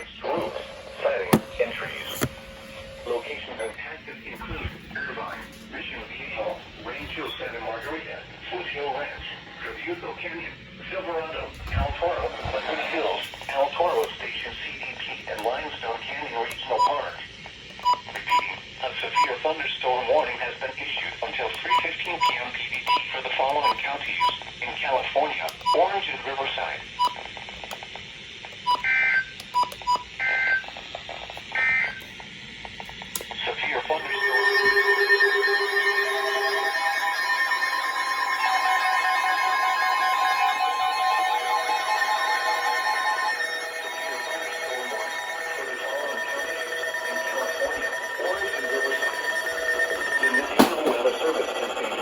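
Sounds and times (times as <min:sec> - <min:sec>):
brief beeps and clicks: 0:00.0 - 0:03.8
electronic alert tone: 0:33.9 - 0:52.0.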